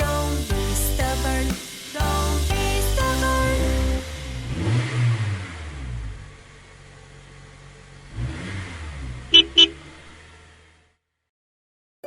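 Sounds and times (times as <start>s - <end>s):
cartoon bus engine revving: 0.0s - 11.1s
horn beeps: 9.4s - 9.8s.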